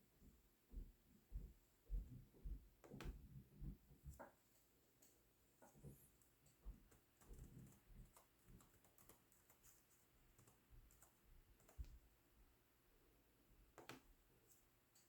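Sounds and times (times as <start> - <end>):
laptop keyboard typing clicks: 6.9 - 12.0.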